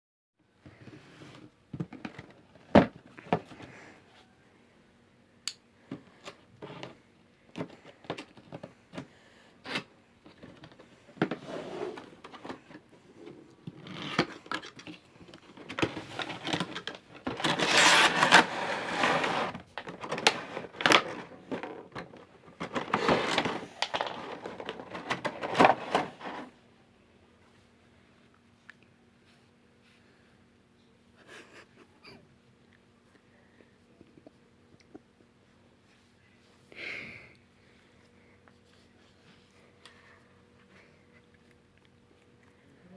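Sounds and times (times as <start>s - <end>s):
packaging rustling and scraping: 9.6s - 26.6s.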